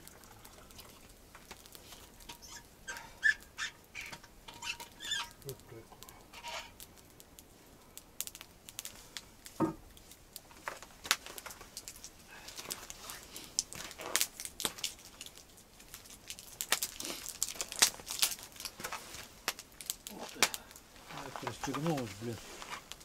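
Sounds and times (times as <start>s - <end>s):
packaging crinkling and rustling: 10.4s - 20.3s, 21.0s - 23.0s.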